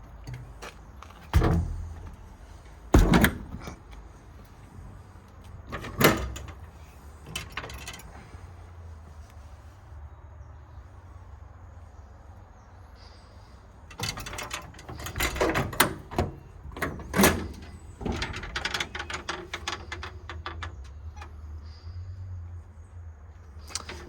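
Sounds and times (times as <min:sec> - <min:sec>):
rattling latch clicks: 0:00.0 - 0:04.1, 0:05.4 - 0:08.2, 0:13.9 - 0:21.4, 0:23.6 - 0:24.0
metal doors clanking and knocking: 0:00.2 - 0:04.5, 0:05.6 - 0:08.2, 0:13.9 - 0:21.5, 0:23.7 - 0:24.0
loud metal bangs: 0:01.3 - 0:03.9.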